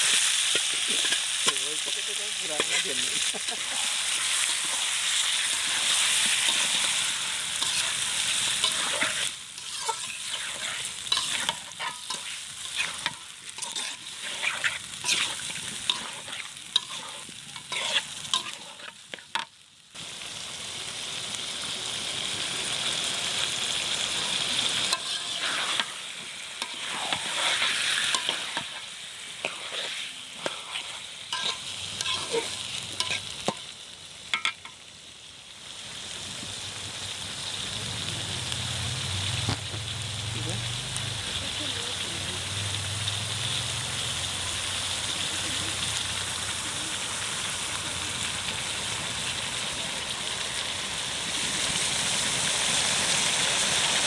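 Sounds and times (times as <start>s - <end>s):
food sizzling in hot oil: 0.0s - 54.0s
utensil scraping a pan: 2.5s - 19.4s, 24.9s - 26.0s, 26.6s - 28.8s, 29.4s - 33.6s.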